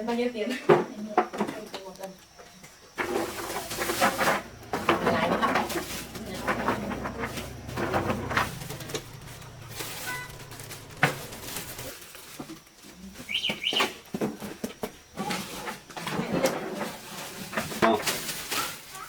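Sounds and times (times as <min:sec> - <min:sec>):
low steady hum: 0:03.0 - 0:12.0
bird chirps: 0:13.2 - 0:14.0.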